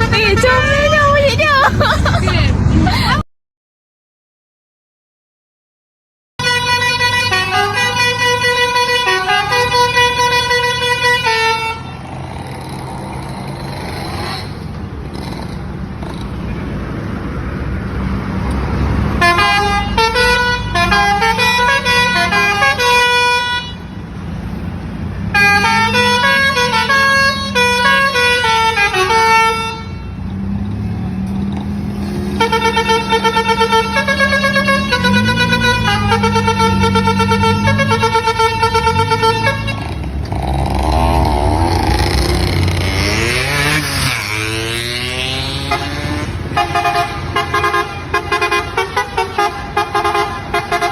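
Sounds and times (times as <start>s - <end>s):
truck engine humming: 0.0s - 3.2s, 6.4s - 50.9s
multi-tone musical air horn: 6.4s - 12.1s, 19.2s - 23.9s, 25.3s - 30.2s, 32.4s - 40.0s, 42.9s - 50.9s.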